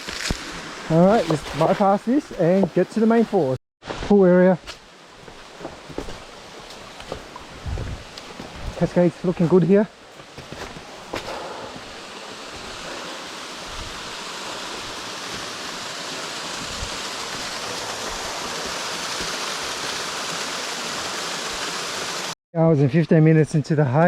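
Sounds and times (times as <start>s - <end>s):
creek water rushing over rocks: 4.9s - 22.4s.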